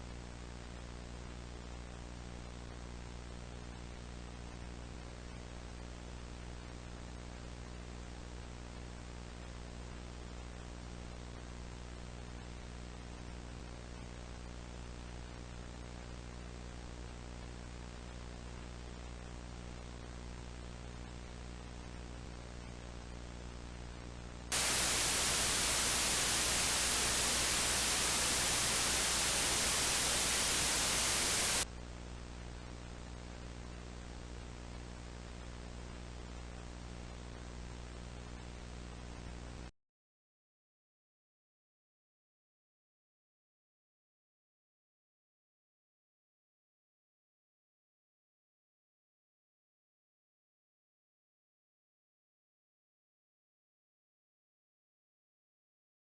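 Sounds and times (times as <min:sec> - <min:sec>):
faint hiss: 0:24.5 - 0:31.6
loud white-noise static: 0:24.5 - 0:31.6
electrical hum: 0:24.6 - 0:31.6.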